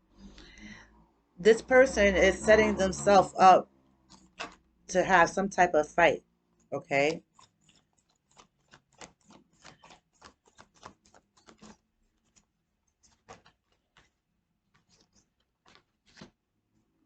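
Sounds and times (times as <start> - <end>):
cards being shuffled: 4.0 - 4.7, 7.0 - 16.4.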